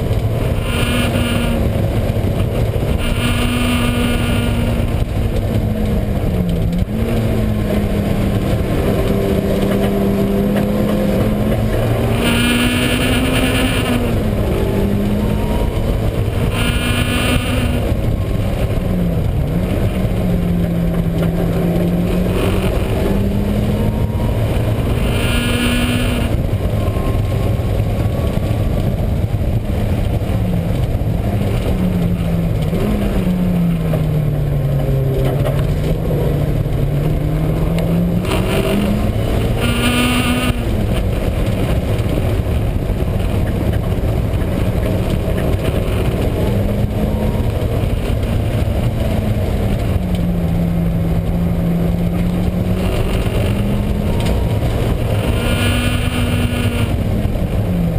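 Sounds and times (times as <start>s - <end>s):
high whining noise: 0.0s - 1.7s, 2.9s - 5.2s
car engine revving: 0.0s - 57.9s.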